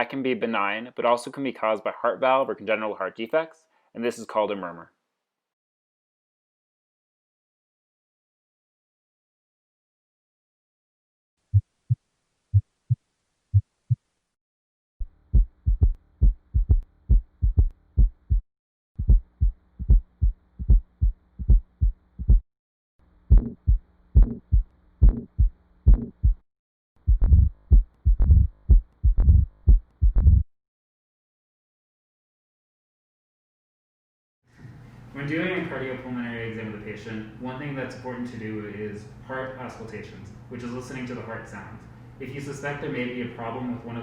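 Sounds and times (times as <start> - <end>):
heartbeat lub-dub sounds: 15.0 - 18.4, 19.0 - 22.4, 23.3 - 26.4, 27.0 - 30.5
heart murmur whoosh: 15.3 - 18.4, 19.0 - 22.4, 23.3 - 26.4, 27.1 - 30.5.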